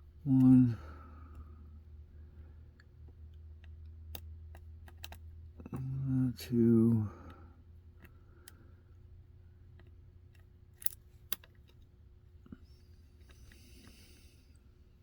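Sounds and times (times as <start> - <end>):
steady low hum: 0.0 - 15.0
metallic clicks of lock pick: 3.6 - 5.9, 9.8 - 11.9.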